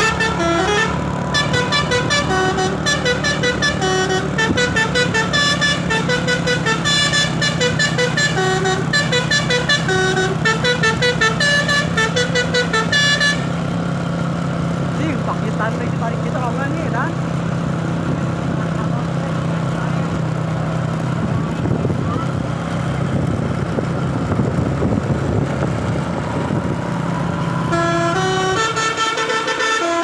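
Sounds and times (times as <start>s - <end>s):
musical truck horn tune: 0.0s - 15.8s, 22.6s - 30.0s.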